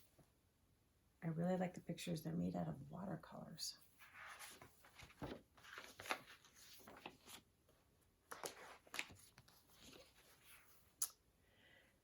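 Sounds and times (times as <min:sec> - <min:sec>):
paper pages rustling: 0:04.0 - 0:11.0.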